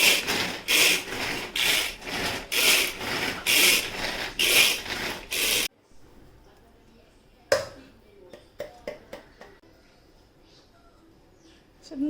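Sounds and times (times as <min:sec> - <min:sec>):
rubbing strokes: 0:00.0 - 0:05.7.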